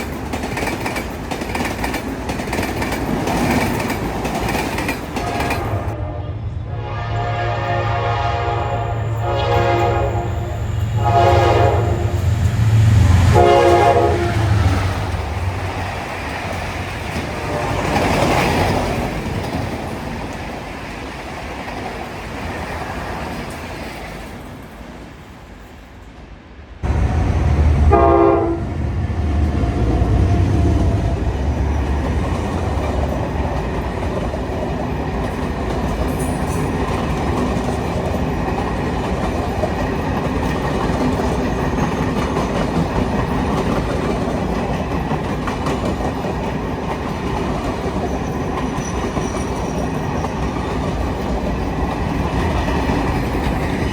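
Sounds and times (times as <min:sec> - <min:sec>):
locomotive rumble: 0:00.0 - 0:20.9, 0:26.8 - 0:53.9
train horn blasts: 0:05.2 - 0:15.2, 0:17.2 - 0:18.1, 0:26.8 - 0:31.2.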